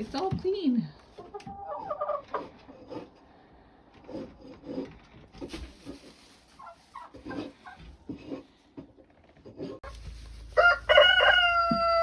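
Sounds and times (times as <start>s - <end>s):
rustling and scraping in bedding: 5.4s - 7.7s, 9.8s - 11.4s.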